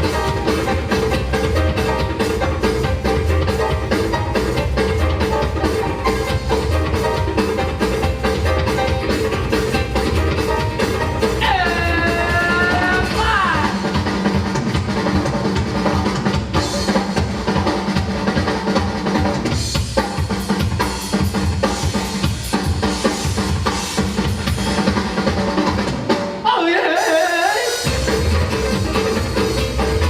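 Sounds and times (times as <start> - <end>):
loud dance music: 0.0 - 15.0, 26.3 - 30.0.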